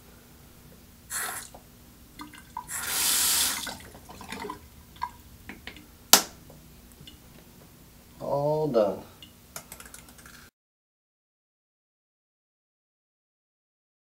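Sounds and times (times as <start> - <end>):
trim cap snapping on: 5.5 - 6.4.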